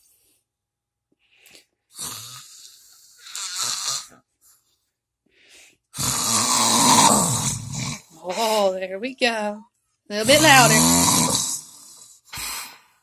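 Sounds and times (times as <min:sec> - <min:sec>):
dog growling: 0:06.0 - 0:08.4, 0:10.2 - 0:11.7.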